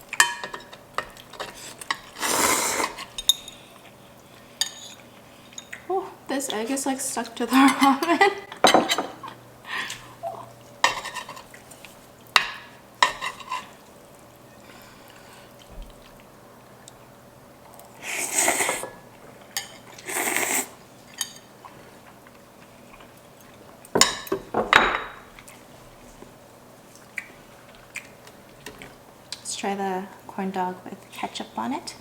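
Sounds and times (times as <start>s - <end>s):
utensils clinking on dishes: 0.1s - 3.7s, 4.6s - 5.8s, 7.6s - 9.4s, 21.1s - 21.5s
slurping noodles: 2.1s - 3.0s, 18.0s - 19.0s, 19.9s - 20.8s.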